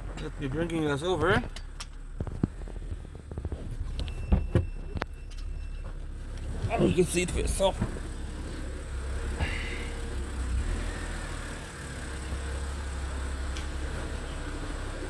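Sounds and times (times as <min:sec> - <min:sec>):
car engine idling: 0:00.0 - 0:15.0
brief squeak: 0:03.8 - 0:05.9.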